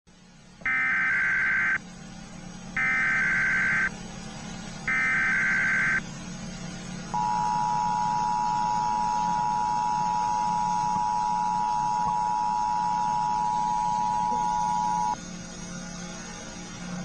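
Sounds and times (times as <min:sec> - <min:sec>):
data bursts: 0:02.8 - 0:03.9, 0:04.9 - 0:06.0, 0:07.2 - 0:15.2
two-tone attention signal: 0:07.2 - 0:15.2.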